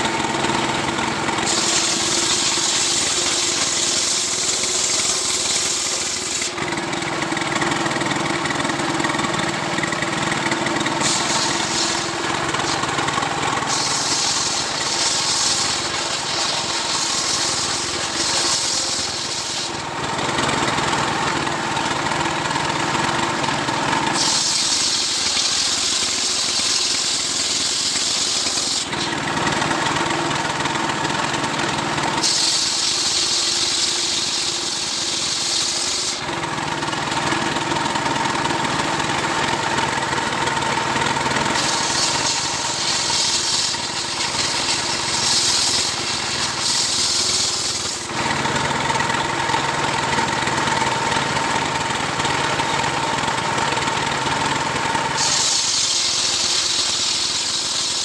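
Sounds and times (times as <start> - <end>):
chainsaw running at high speed: 0.0 - 58.0
chain cutting through trunk: 11.0 - 19.7, 41.5 - 48.1.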